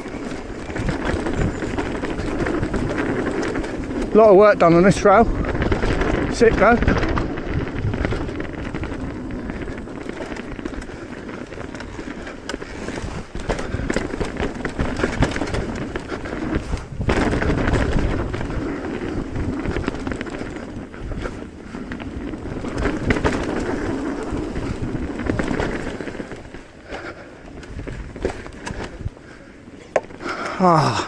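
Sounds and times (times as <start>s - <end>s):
wind on microphone: 0.0s - 29.5s
bike tyres crunching on dirt: 0.0s - 31.0s
bike clattering knocks: 9.9s - 18.5s.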